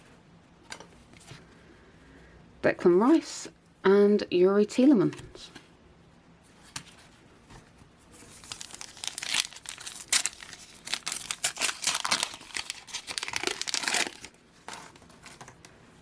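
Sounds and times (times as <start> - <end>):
wrapper crinkling: 8.2 - 15.4.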